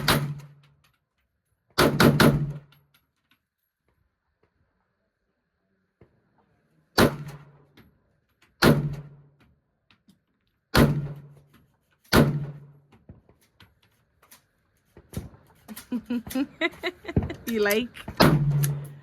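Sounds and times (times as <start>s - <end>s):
gunshots with echo: 1.8s - 2.6s, 18.1s - 19.0s.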